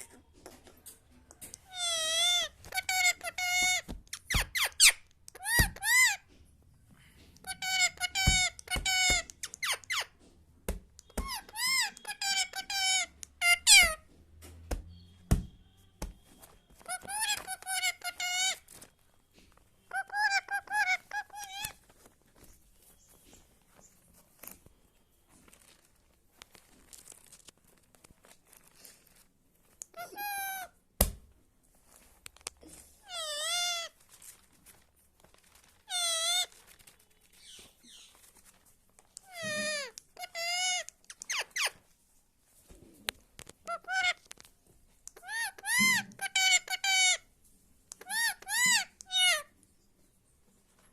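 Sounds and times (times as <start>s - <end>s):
parrot calling: 1.6s - 6.2s, 7.4s - 10.1s, 19.9s - 21.8s, 33.0s - 33.9s.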